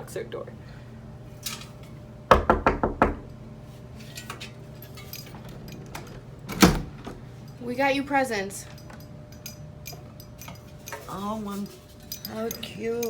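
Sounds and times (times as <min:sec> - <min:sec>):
knocking on a door: 0:02.3 - 0:03.3.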